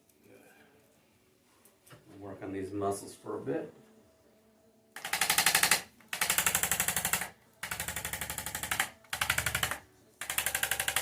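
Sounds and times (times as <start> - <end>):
percussion massager hammering: 5.0 - 11.0.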